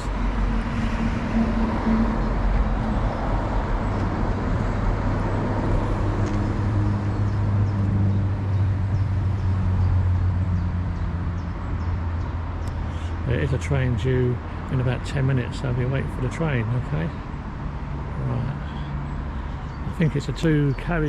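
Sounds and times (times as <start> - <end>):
low engine drone: 0.0 - 9.1
vehicles passing: 0.0 - 21.0.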